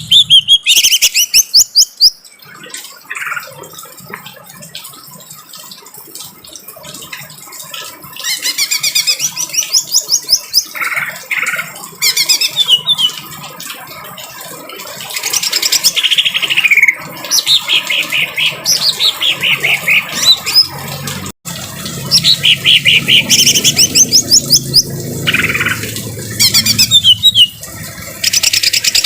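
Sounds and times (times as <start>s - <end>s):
bird calling harsh trills: 0.0s - 2.2s, 8.1s - 13.3s, 15.3s - 20.8s, 22.1s - 27.6s
rain hiss: 14.5s - 29.0s.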